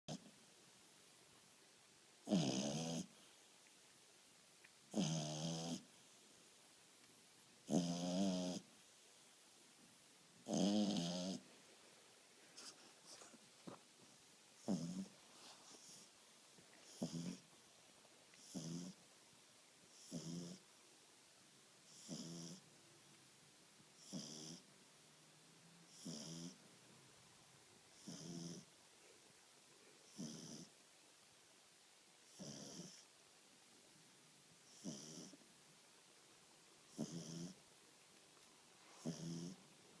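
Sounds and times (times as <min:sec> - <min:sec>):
puppy snoring: 0:02.2 - 0:03.3, 0:04.9 - 0:06.0, 0:07.6 - 0:08.8, 0:10.4 - 0:11.6, 0:14.6 - 0:17.6, 0:18.3 - 0:19.0, 0:19.9 - 0:20.7, 0:21.8 - 0:22.7, 0:24.0 - 0:24.7, 0:25.8 - 0:26.6, 0:27.9 - 0:28.8, 0:30.0 - 0:30.8, 0:32.2 - 0:33.1, 0:34.6 - 0:35.5, 0:36.8 - 0:37.6, 0:38.8 - 0:39.7.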